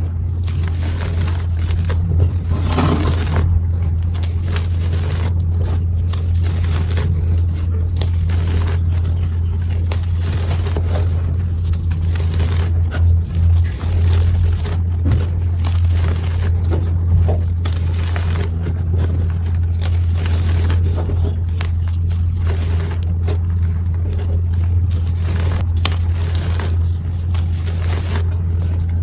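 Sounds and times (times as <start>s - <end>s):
chalk being crushed: 0.0s - 29.0s
low hum: 0.0s - 29.0s.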